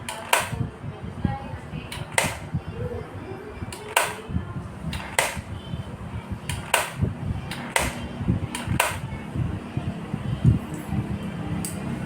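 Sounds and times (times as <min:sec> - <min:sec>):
low rumbling background: 0:00.0 - 0:12.0
sharp taps: 0:06.5 - 0:09.1.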